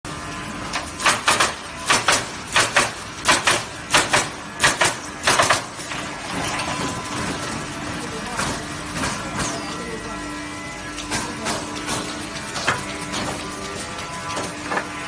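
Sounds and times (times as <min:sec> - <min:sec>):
machine hum: 0:00.1 - 0:15.0
pneumatic nailer hissing shots: 0:01.0 - 0:05.8.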